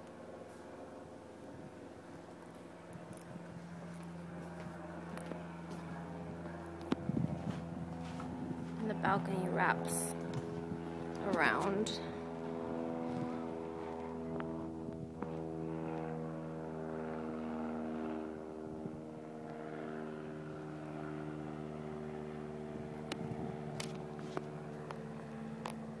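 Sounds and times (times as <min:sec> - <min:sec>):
mechanical drone: 0:00.0 - 0:19.2.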